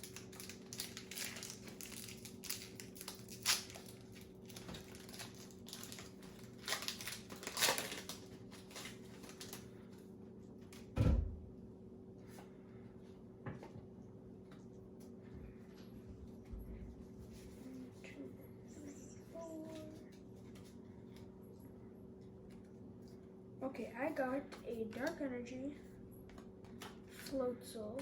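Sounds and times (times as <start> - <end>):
foil wrapper crinkling: 0.0 - 10.0.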